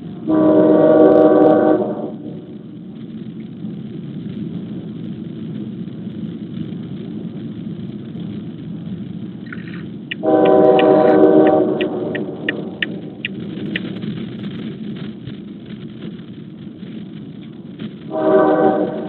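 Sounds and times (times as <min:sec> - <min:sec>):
low rumble: 0:00.0 - 0:19.0
train horn chord: 0:00.2 - 0:02.4, 0:10.2 - 0:12.5, 0:18.1 - 0:19.0
short high ticks: 0:09.5 - 0:14.0.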